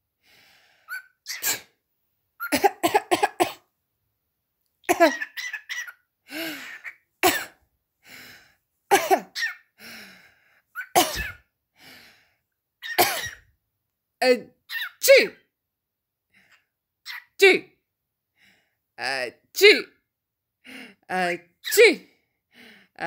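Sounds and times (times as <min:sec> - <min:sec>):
parrot mimicking coughs: 0:00.9 - 0:01.7, 0:02.4 - 0:03.7, 0:04.8 - 0:06.0, 0:06.6 - 0:07.6, 0:08.9 - 0:09.7, 0:10.8 - 0:11.5, 0:12.8 - 0:13.5
parrot mimicking sneezes: 0:00.9 - 0:01.8, 0:10.8 - 0:11.4
breathy huffs: 0:06.2 - 0:06.9, 0:08.0 - 0:08.6, 0:09.8 - 0:12.4.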